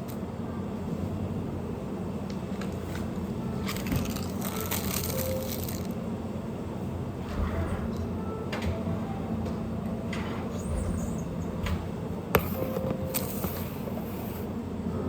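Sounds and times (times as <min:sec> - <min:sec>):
steady low hum: 0:00.0 - 0:15.0
crackling rustle: 0:03.7 - 0:05.9.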